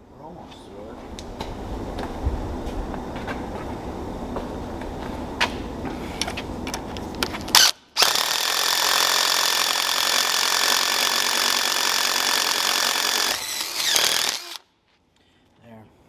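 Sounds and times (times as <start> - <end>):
electric power tool hissing: 7.5 - 14.6.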